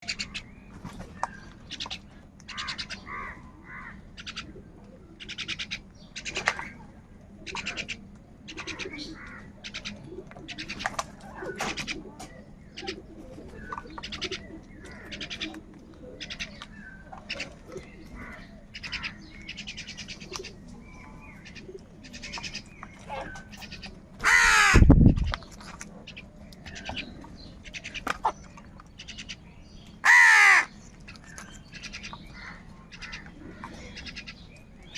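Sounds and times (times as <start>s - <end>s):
crows cawing: 2.5s - 4.4s, 8.5s - 9.6s, 18.2s - 19.2s, 24.2s - 24.9s, 30.0s - 30.8s, 32.0s - 34.3s.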